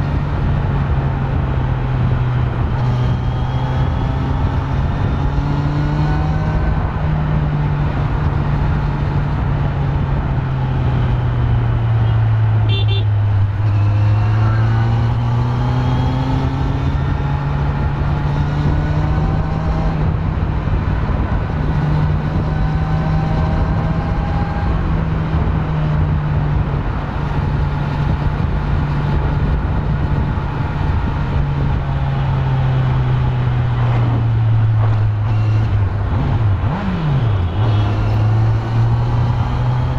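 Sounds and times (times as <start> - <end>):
motorcycle engine revving: 0.0 - 39.9
vehicle horn: 12.0 - 14.0, 37.0 - 38.2.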